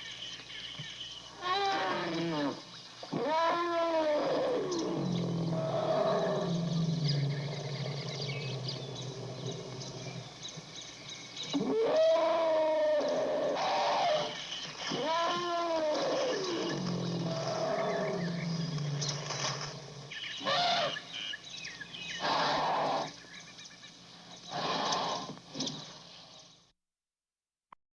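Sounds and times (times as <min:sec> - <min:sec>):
birds chirping faintly: 0:00.0 - 0:26.7
elephant calling: 0:01.3 - 0:10.7, 0:11.3 - 0:23.5.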